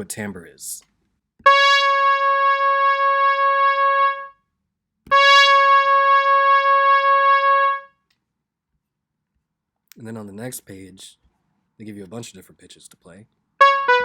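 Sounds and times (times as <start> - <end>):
synthesizer note: 1.5 - 4.3, 5.1 - 7.9, 13.6 - 14.0.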